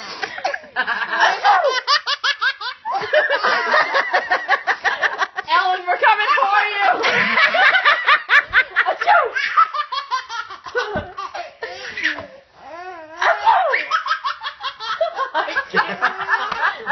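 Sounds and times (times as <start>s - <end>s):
baby laughing: 1.2s - 3.5s, 9.0s - 16.8s.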